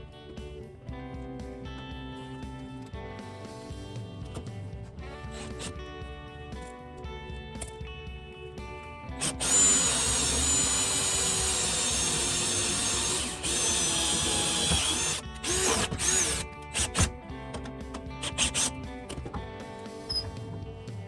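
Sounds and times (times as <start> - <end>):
power drill drilling into metal: 5.3 - 5.8, 9.2 - 20.7.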